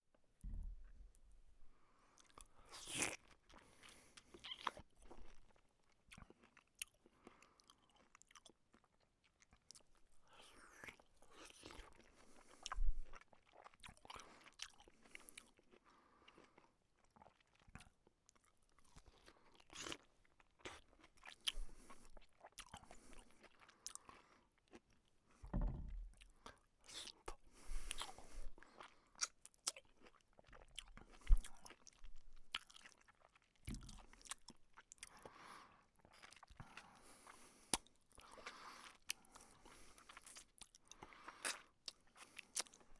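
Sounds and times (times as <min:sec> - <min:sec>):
wet chewing: 0:26.2 - 0:42.9.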